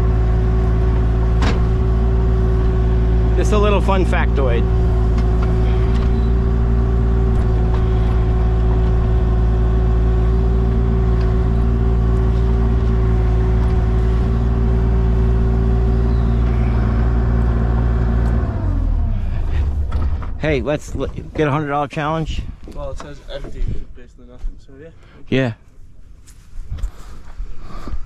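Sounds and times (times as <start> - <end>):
excavator diesel engine running: 0.0 - 21.6.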